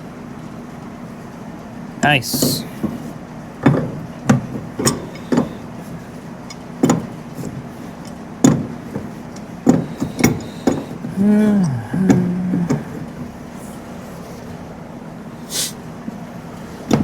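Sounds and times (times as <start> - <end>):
faint steady hum: 2.0 - 17.0
metal knocks on rusted fitting: 3.6 - 5.6, 6.8 - 7.7, 8.4 - 11.1.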